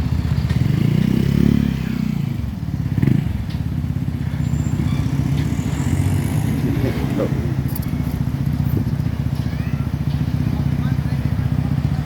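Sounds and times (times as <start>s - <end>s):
truck diesel engine revving: 0.0s - 9.4s.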